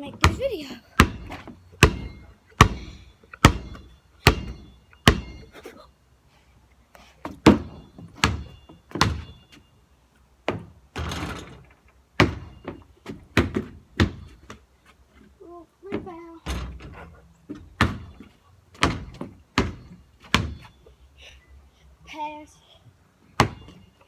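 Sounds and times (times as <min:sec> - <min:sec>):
basketball bouncing: 0:00.1 - 0:05.5, 0:07.3 - 0:09.4, 0:12.2 - 0:14.6, 0:17.5 - 0:20.7, 0:23.4 - 0:23.8.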